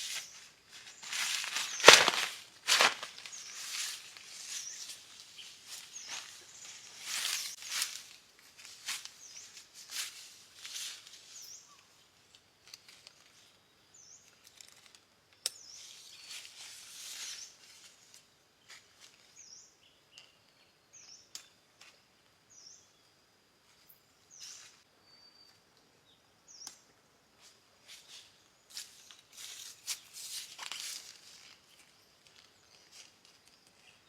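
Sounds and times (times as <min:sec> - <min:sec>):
rustling: 0:00.0 - 0:11.4
bird chirping: 0:23.9 - 0:27.0.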